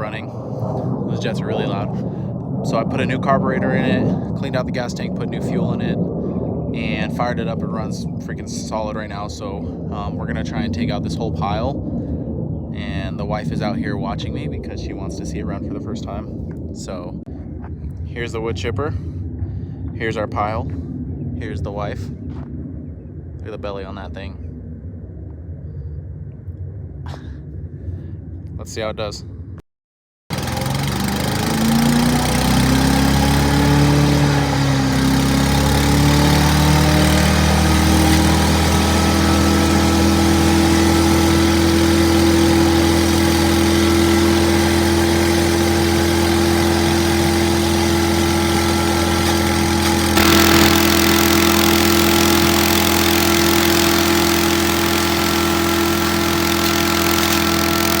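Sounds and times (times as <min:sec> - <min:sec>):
gasoline engine running: 0:30.3 - 0:58.0
harsh mechanical noise: 0:30.3 - 0:58.0.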